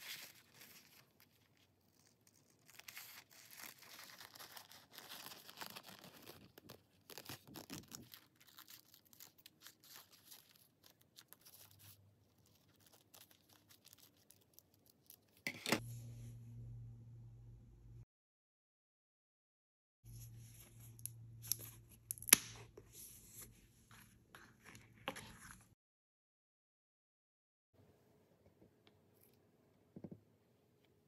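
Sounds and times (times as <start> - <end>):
paper rustling and crinkling: 0.0 - 15.8
paper tearing: 1.9 - 14.5.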